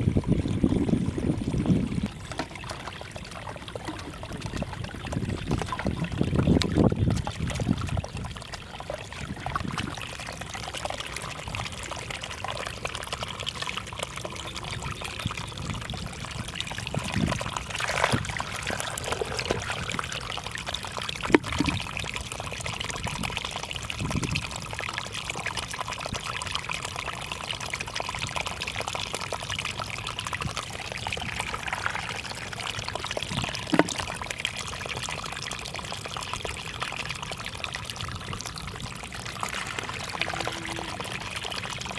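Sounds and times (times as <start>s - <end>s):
water trickling and pouring: 0.0s - 41.9s
brief splashes or knocks: 33.6s - 34.2s.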